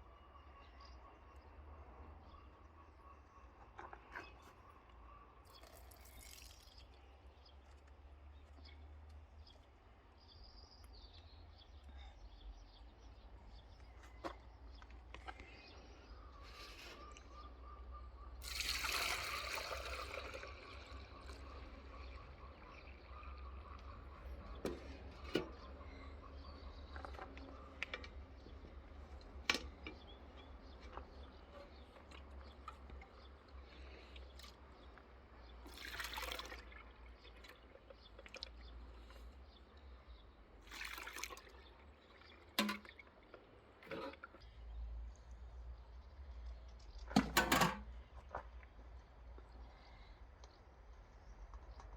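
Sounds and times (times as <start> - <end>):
water trickling and pouring: 5.4 - 7.0, 18.4 - 24.1, 35.6 - 39.1, 40.6 - 44.4.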